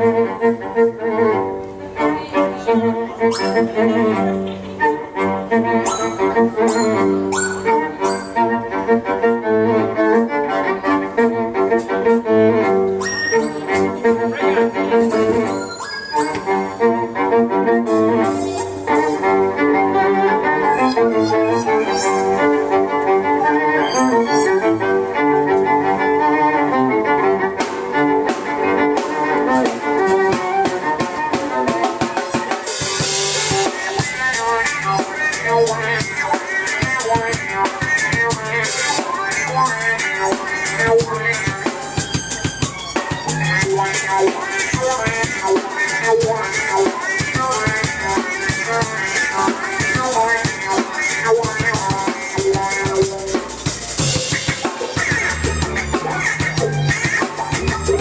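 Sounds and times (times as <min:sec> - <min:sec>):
violin melody: 0:00.0 - 0:58.0
drum kit beat: 0:27.5 - 0:58.0.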